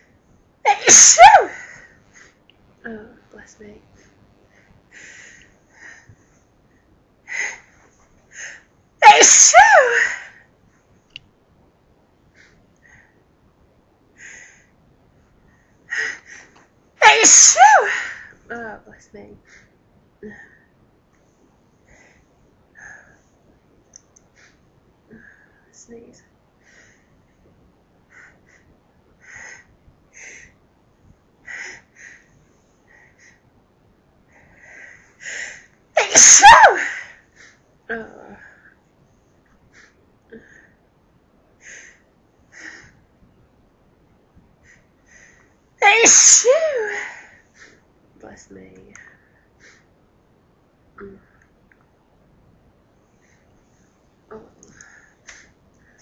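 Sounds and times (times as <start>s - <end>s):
woman sneezing: 0.7s - 1.6s, 9.0s - 10.2s, 17.0s - 18.0s, 36.0s - 37.0s, 45.8s - 47.1s
faint breathy sounds: 52.9s - 56.0s.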